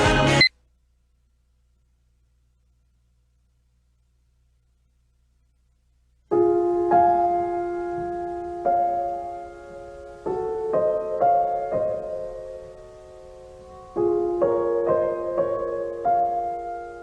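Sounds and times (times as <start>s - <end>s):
slow gentle piano music: 6.3s - 17.0s.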